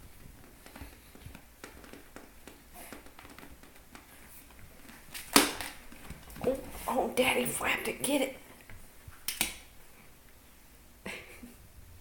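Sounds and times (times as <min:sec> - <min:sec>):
cat toy tapping and rustling: 0:00.2 - 0:04.2.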